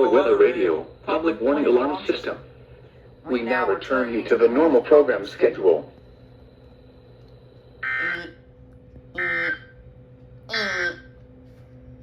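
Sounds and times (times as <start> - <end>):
harsh electronic data bursts: 7.7 - 8.4, 9.2 - 9.8.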